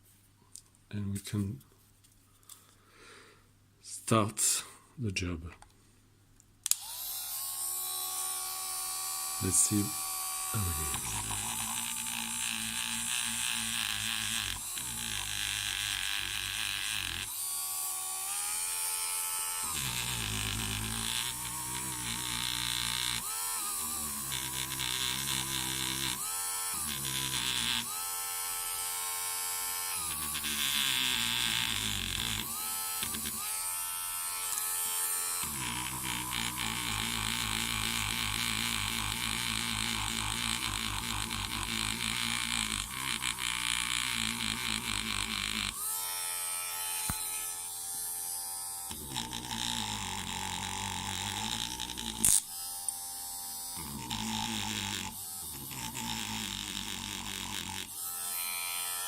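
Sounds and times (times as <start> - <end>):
rotary tool motor whine: 6.7 - 59.0.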